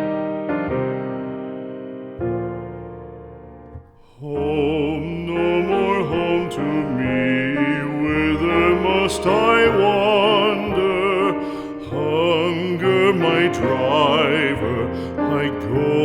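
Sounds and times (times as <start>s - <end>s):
soft piano chords: 0.0s - 16.0s
person singing with vibrato: 4.0s - 16.0s.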